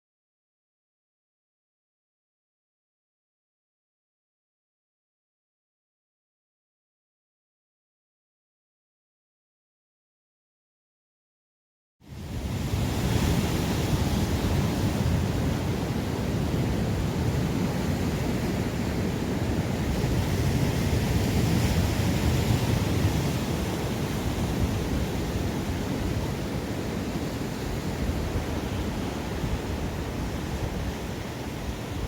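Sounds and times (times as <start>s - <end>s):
sea surf on rocky shore: 12.1s - 32.0s
wind buffeting microphone: 12.1s - 32.0s.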